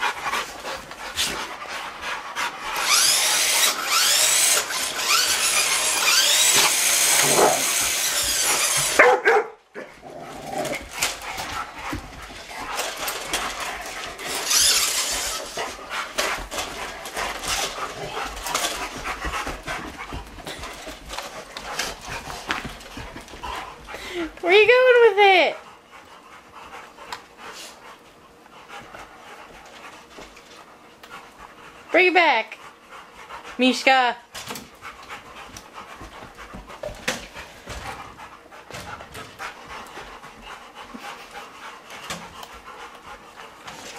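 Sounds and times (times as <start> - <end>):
electric motor whining: 2.8 - 9.0, 14.3 - 15.6
dog scuffling and clicking: 10.4 - 24.0.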